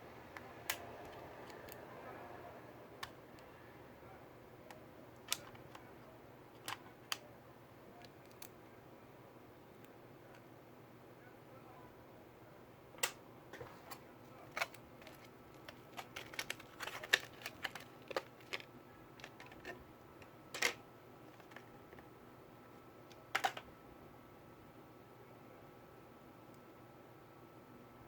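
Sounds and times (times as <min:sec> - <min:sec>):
laptop keyboard typing: 0:14.5 - 0:19.8.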